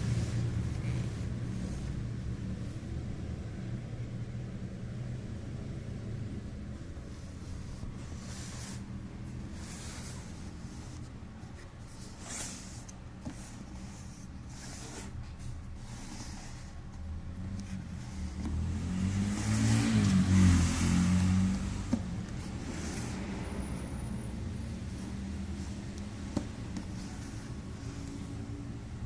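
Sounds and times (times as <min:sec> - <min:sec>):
soft rustles: 0:00.0 - 0:02.8, 0:06.8 - 0:18.9, 0:21.6 - 0:29.0.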